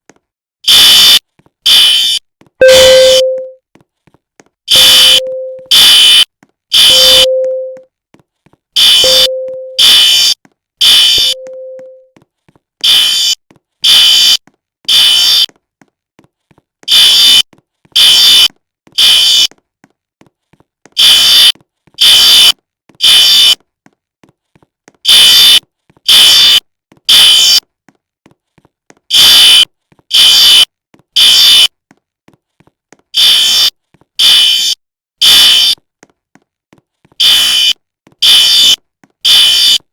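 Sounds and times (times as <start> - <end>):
fire alarm shrill blasts: 0.7 - 3.3, 6.8 - 7.3, 8.8 - 11.4, 29.1 - 31.7, 33.2 - 35.8, 37.2 - 39.8.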